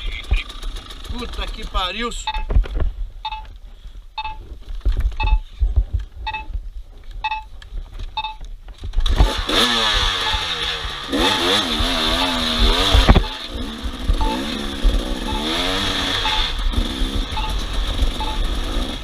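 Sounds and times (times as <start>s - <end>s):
short electronic beeps: 2.2s - 2.6s, 3.2s - 3.5s, 4.2s - 4.4s, 5.2s - 5.5s, 6.2s - 6.5s, 7.2s - 7.5s, 8.2s - 8.4s, 10.1s - 13.5s, 14.1s - 14.6s, 15.2s - 16.6s, 17.2s - 18.7s
off-road vehicle engine revving: 9.0s - 19.0s.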